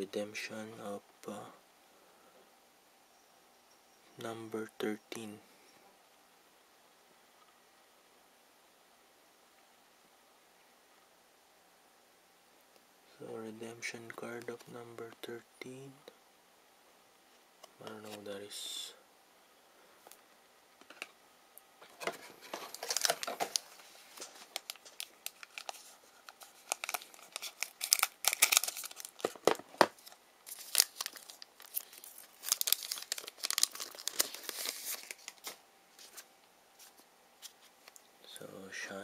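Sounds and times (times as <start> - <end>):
card pack wrapper tearing and crinkling: 22.5 - 36.2.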